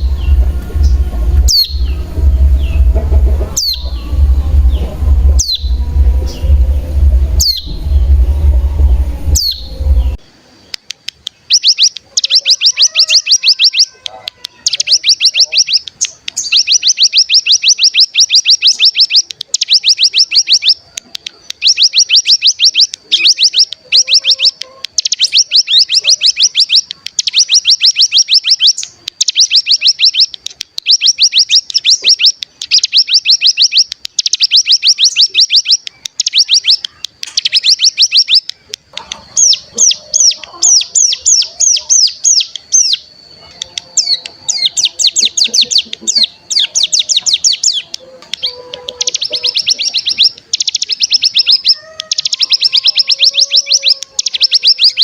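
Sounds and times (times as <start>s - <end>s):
bird rapid high trilling: 0.0s - 6.6s, 44.0s - 55.0s.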